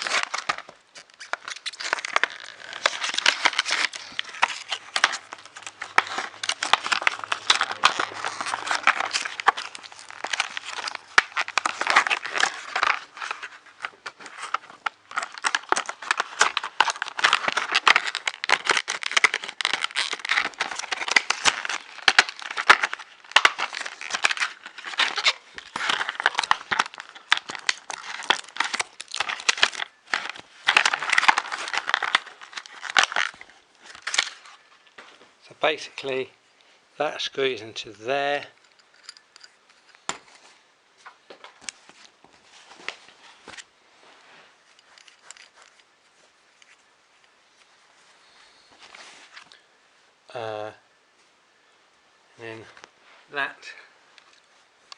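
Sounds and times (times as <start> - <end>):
packaging crinkling and tearing: 0.0 - 35.0.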